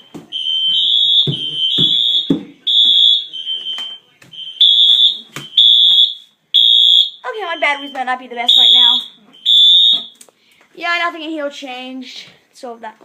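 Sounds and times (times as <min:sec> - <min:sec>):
fire alarm sounders pulsing: 0:00.3 - 0:10.2.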